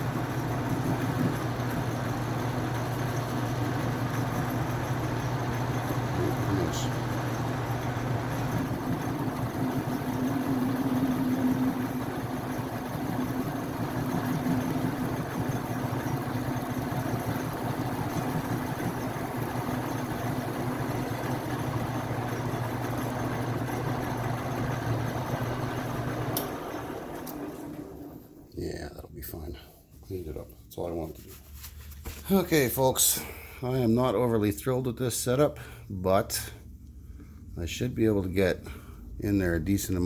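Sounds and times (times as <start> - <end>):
metal lathe humming: 0.0 - 28.3.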